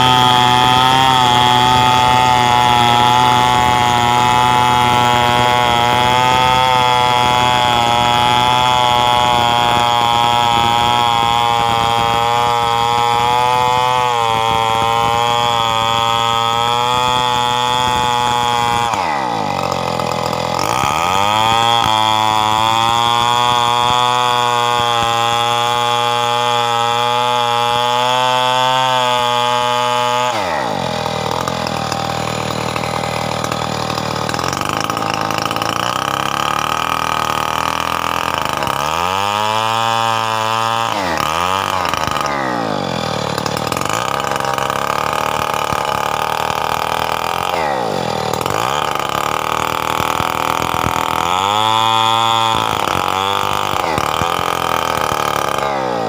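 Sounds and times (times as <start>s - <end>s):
chainsaw cutting wood: 0.0s - 56.0s.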